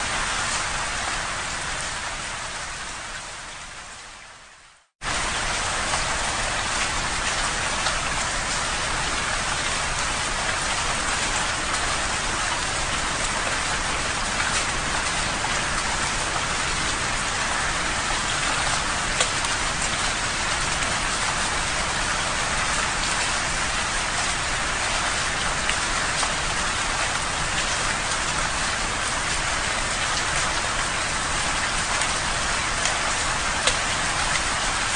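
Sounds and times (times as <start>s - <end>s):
heavy rain on a window: 0.0s - 34.9s
raindrop ticks: 18.6s - 19.6s.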